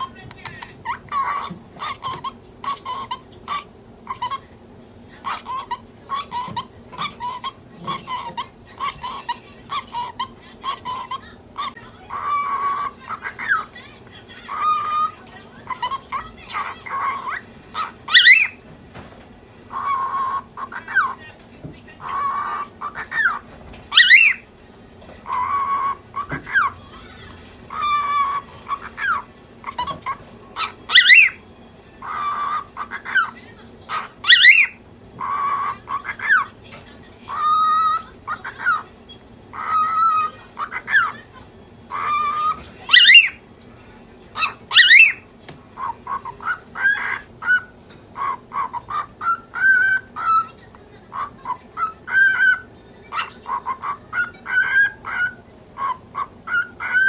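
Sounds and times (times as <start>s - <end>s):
cockatiel chattering: 0.0s - 4.6s, 5.2s - 18.7s, 19.6s - 43.6s, 44.3s - 57.0s
sharp bird calls: 14.4s - 18.6s, 22.0s - 24.5s, 25.2s - 36.6s, 37.3s - 43.4s, 44.4s - 57.0s.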